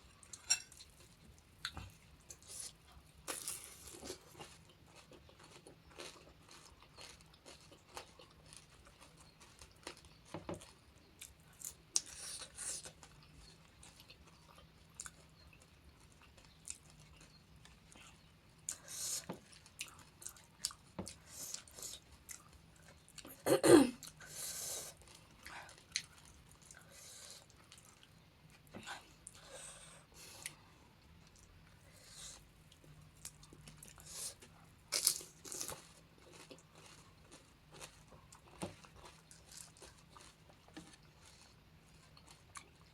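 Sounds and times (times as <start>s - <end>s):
chewing and crunching crisp shells: 3.3s - 23.3s, 24.9s - 28.2s, 32.7s - 42.9s.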